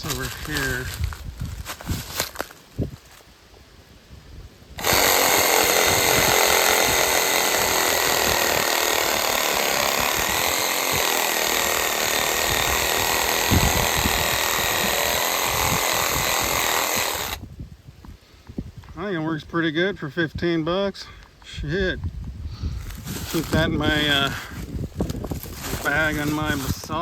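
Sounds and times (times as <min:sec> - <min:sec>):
low thuds of cutting strokes: 0:04.8 - 0:17.4
reciprocating saw motor whine: 0:04.8 - 0:17.4.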